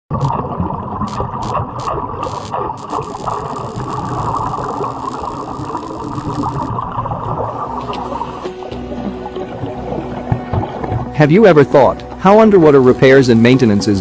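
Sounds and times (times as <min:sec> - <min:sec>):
welding arc crackling: 0:00.1 - 0:00.4, 0:01.0 - 0:06.7, 0:12.8 - 0:13.4
short hissing bursts: 0:01.1 - 0:06.7.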